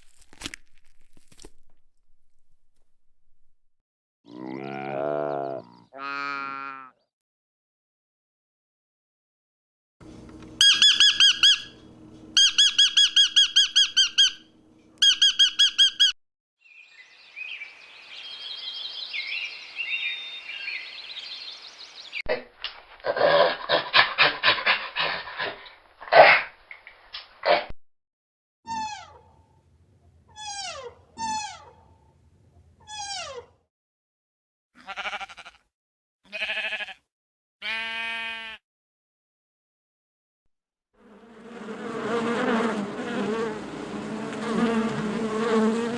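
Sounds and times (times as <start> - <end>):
sheep bleating: 4.3 - 7.0, 34.8 - 35.7, 36.3 - 38.6
soft bird chirps and trills: 10.6 - 11.8, 12.4 - 22.2
bird calling rapid notes: 10.6 - 16.2.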